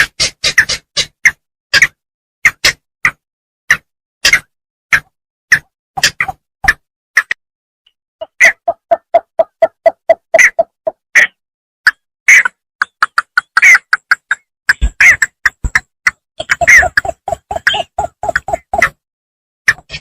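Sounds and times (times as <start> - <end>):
sharp clicks: 11.8 - 19.0.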